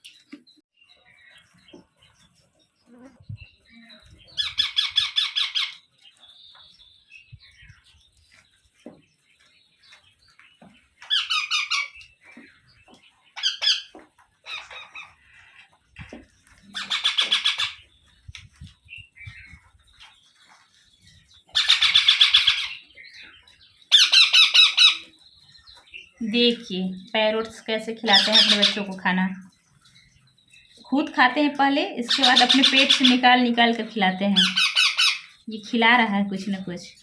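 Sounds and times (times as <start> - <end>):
soft parrot chatter: 0.0 - 37.0
parrots giving harsh begging calls: 16.8 - 17.8, 21.6 - 22.8, 23.9 - 25.0, 28.1 - 28.8, 32.1 - 33.2, 34.4 - 35.3.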